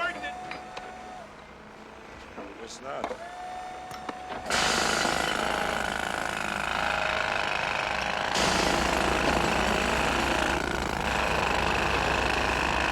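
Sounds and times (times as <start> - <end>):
jackhammer hammering: 4.5 - 12.9.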